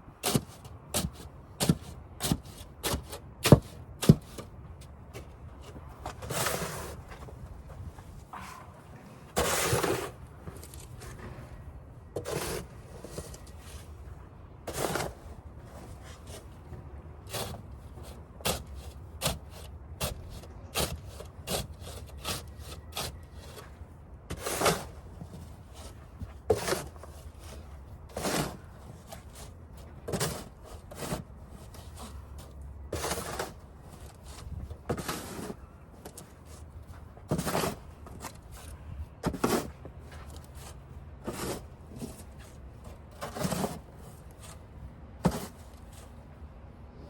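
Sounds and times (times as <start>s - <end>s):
snow shovel scraping snow: 6.1s - 7.1s, 9.3s - 11.3s, 12.2s - 13.9s, 14.7s - 16.5s, 17.3s - 23.6s, 24.3s - 25.0s, 25.7s - 29.5s, 30.1s - 32.1s, 32.9s - 35.6s, 37.3s - 38.6s, 39.2s - 42.6s, 43.2s - 44.6s, 45.2s - 46.1s.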